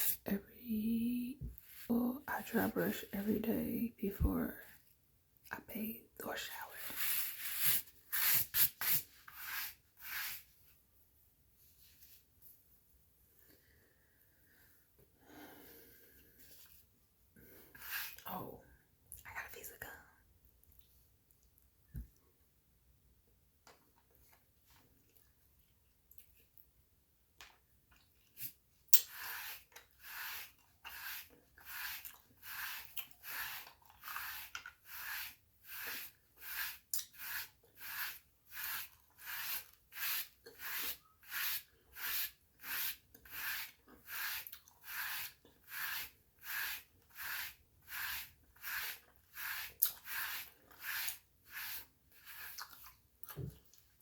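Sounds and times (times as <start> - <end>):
brush rasping over skin: 6.3 - 10.5, 17.6 - 18.2, 28.4 - 53.0.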